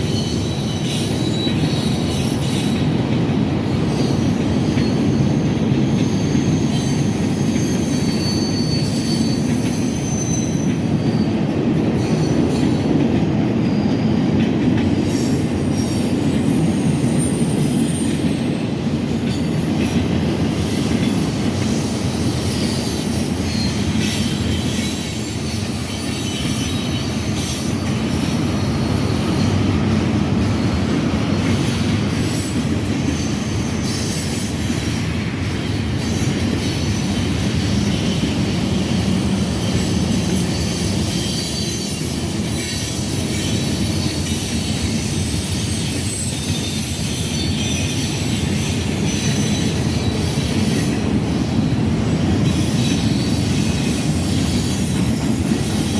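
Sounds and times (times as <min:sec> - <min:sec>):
wheels squealing high-pitched: 0:00.0 - 0:02.8, 0:03.9 - 0:11.3, 0:20.6 - 0:29.7, 0:31.5 - 0:55.9
freight train cars rumbling: 0:00.0 - 0:55.9.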